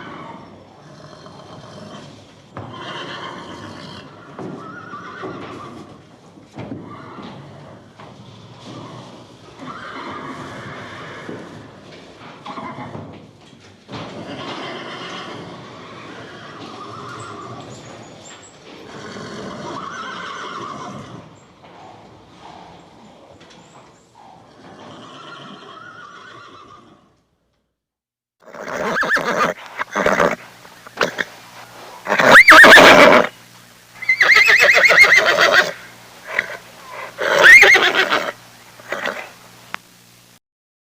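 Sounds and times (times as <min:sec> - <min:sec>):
horse neighing: 0:00.0 - 0:06.0, 0:06.8 - 0:07.9, 0:08.5 - 0:11.6, 0:12.4 - 0:13.0, 0:14.1 - 0:18.2, 0:18.8 - 0:21.4, 0:22.4 - 0:27.2, 0:28.4 - 0:33.4, 0:34.0 - 0:39.4.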